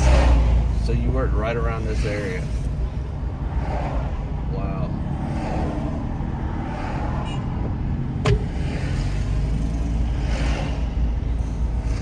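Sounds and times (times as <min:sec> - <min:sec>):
car road and engine noise: 0:00.0 - 0:12.0
sharp knock: 0:08.2 - 0:08.9.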